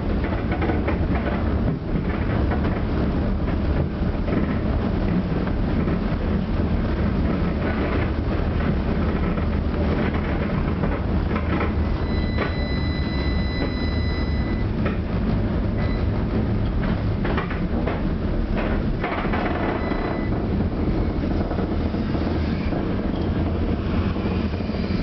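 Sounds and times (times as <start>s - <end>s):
wheel clacks on track: 0.0s - 22.1s
tram low rumble: 0.0s - 25.0s
thin high whine: 11.8s - 14.7s.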